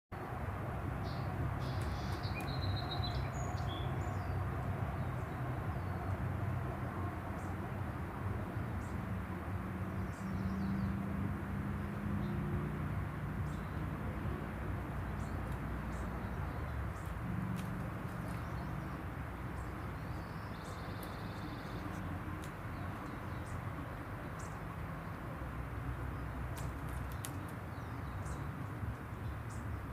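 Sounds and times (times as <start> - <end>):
bird chirps: 1.0 - 4.4, 18.2 - 23.6.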